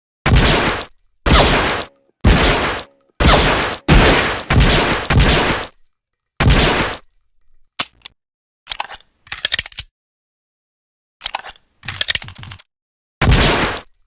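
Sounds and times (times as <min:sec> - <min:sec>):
pistol gunshots with echo: 0:00.3 - 0:05.7, 0:06.4 - 0:07.0
metallic clicks and clatter: 0:02.8 - 0:09.9, 0:11.2 - 0:12.7.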